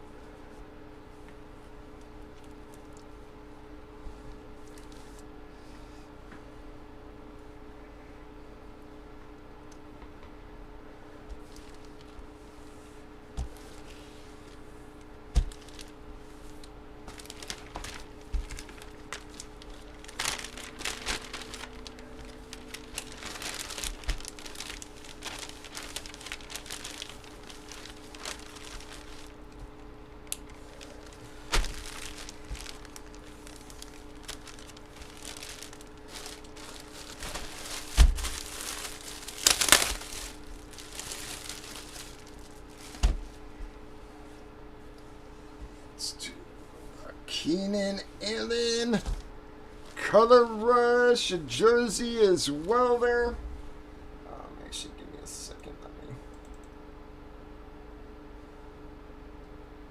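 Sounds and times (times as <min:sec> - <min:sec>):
faint steady hum: 0:00.0 - 0:59.9
packaging crinkling: 0:11.4 - 0:12.2, 0:15.4 - 0:43.4.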